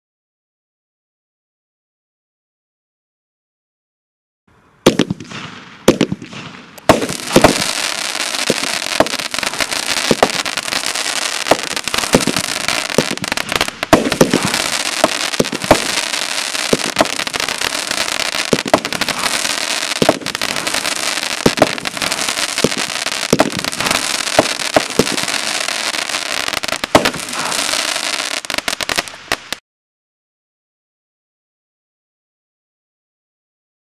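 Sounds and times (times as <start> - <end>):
firework launch thumps: 4.9 - 7.7, 8.4 - 10.4, 11.4 - 16.0, 16.7 - 25.5, 26.8 - 27.8
dense firework crackling: 4.9 - 29.6.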